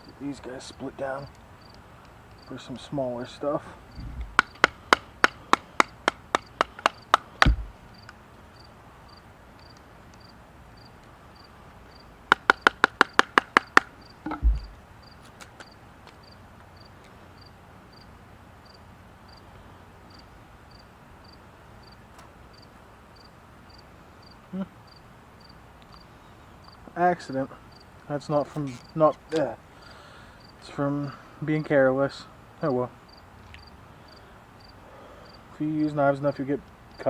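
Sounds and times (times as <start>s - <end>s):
faint insect chirps: 1.6s - 1.8s, 2.4s - 2.6s, 7.0s - 12.1s, 14.0s - 19.4s, 20.1s - 26.8s, 27.7s - 27.9s, 30.4s - 30.6s, 33.0s - 35.4s
dull thud: 4.0s - 4.7s, 7.4s - 7.8s, 14.2s - 14.8s
wood knocking on knife spine: 4.0s - 7.8s, 12.3s - 14.8s.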